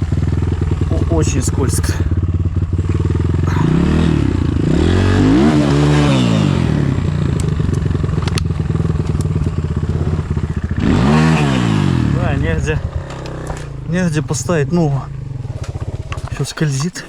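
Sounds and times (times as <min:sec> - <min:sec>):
motorcycle engine revving: 0:00.0 - 0:17.0
sharp clicks: 0:07.3 - 0:11.5, 0:12.8 - 0:17.0.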